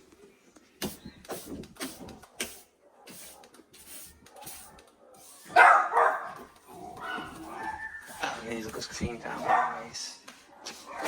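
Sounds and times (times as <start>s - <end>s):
dog barking: 4.3s - 8.3s, 9.3s - 11.0s.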